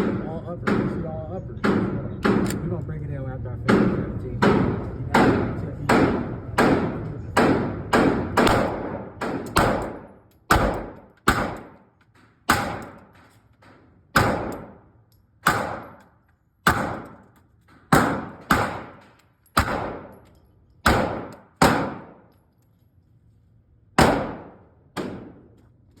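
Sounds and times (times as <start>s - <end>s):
pistol shots with echo: 1.6s - 2.6s, 3.7s - 11.8s, 12.5s - 13.1s, 14.1s - 16.0s, 16.6s - 17.3s, 17.9s - 20.2s, 20.8s - 22.3s, 24.0s - 25.5s.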